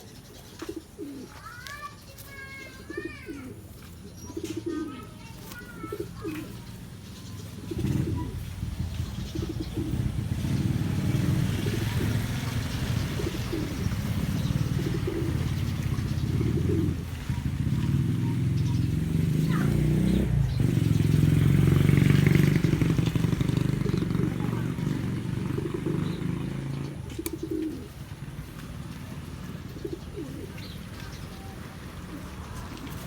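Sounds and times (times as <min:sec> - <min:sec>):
pigeons cooing: 0:00.0 - 0:01.5, 0:02.4 - 0:33.0.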